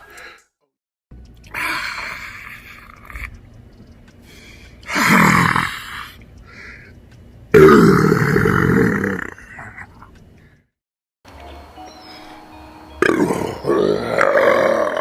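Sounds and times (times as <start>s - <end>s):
man burping loudly: 4.9s - 6.0s, 7.5s - 9.8s, 13.0s - 15.0s.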